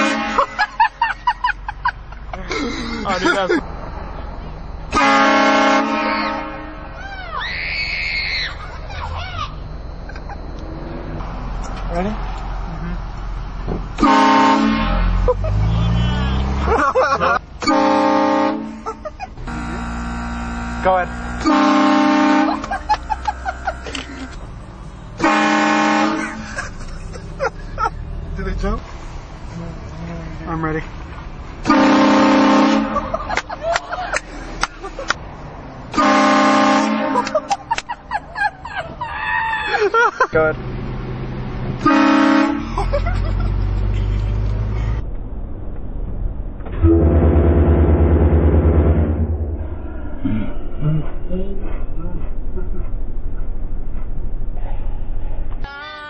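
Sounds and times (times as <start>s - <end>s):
train air horn blasts: 0.0s - 0.5s, 4.9s - 6.9s, 14.0s - 15.2s, 17.6s - 22.8s, 25.2s - 26.4s, 31.6s - 33.1s, 35.9s - 37.4s, 41.8s - 42.7s, 46.8s - 49.5s
people crying out: 7.0s - 9.6s, 38.3s - 40.2s, 55.6s - 56.0s
vehicle engine running: 8.6s - 39.0s, 39.8s - 55.7s.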